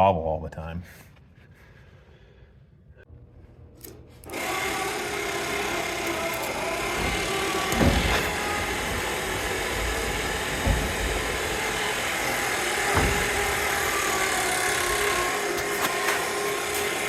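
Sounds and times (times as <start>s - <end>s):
machine running: 3.8s - 17.0s
dull knocks: 6.8s - 15.2s.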